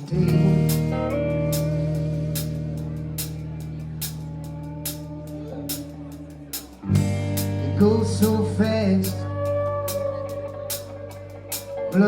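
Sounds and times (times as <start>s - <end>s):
person singing: 0.0s - 3.0s, 4.0s - 6.9s, 7.5s - 12.0s
drummer playing cymbals: 0.0s - 8.4s
live rock band chord: 0.0s - 12.0s.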